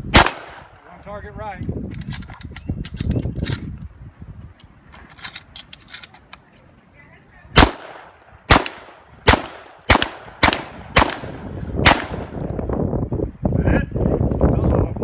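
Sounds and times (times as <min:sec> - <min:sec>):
shotgun shots: 0:00.1 - 0:00.7, 0:07.6 - 0:12.4.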